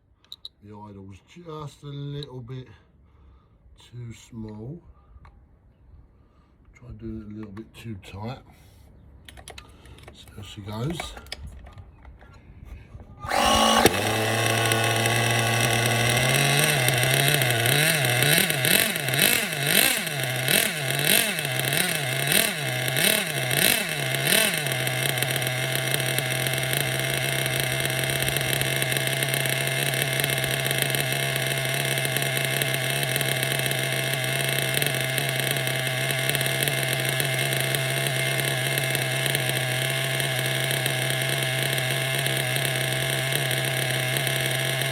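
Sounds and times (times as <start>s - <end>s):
model engine revving: 13.3s - 44.9s.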